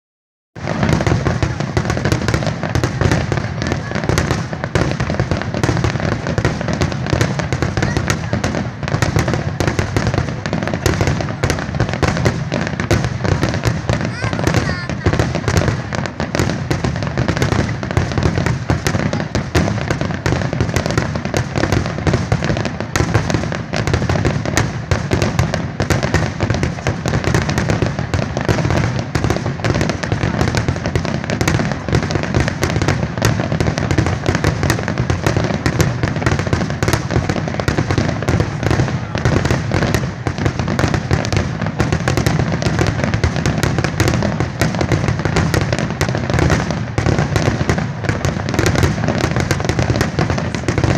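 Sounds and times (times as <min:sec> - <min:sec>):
fireworks barrage: 0:00.6 - 0:50.9.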